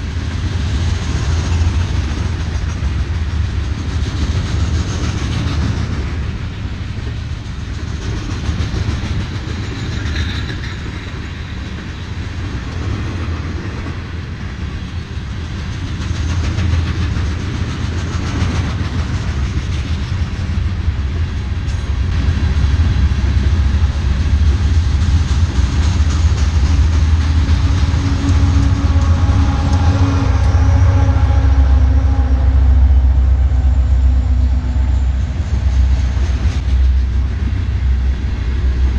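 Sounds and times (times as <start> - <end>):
wheel clatter on rails: 0.0 - 14.0
train rumbling past: 0.0 - 38.9.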